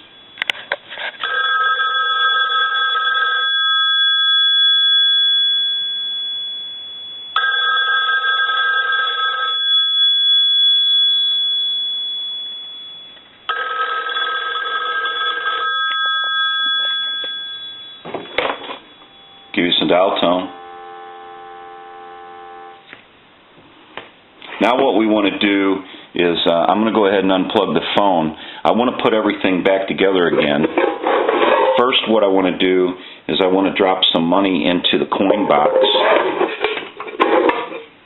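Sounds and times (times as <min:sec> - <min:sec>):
telephone ringer bells ringing: 0:01.2 - 0:22.9.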